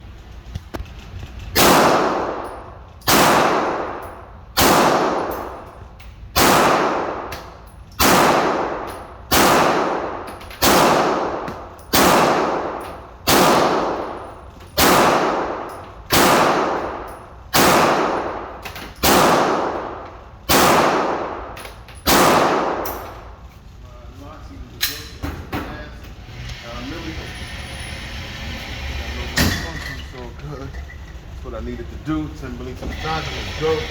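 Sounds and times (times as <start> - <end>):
handgun shots echoing: 1.6 - 5.7, 6.3 - 14.2, 14.8 - 23.3.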